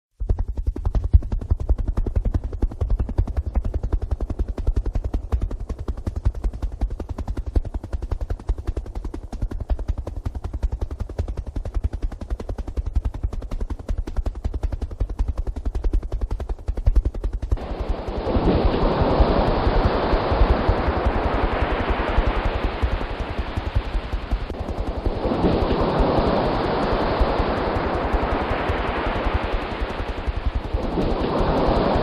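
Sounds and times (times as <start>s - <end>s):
helicopter rotor chopping: 0.2s - 32.0s
loud even rushing noise: 17.6s - 32.0s.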